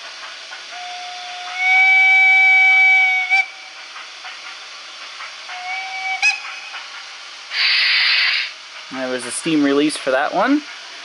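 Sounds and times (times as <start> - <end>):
model train steam whistle: 0.7 - 3.8, 5.5 - 6.8, 7.5 - 8.6.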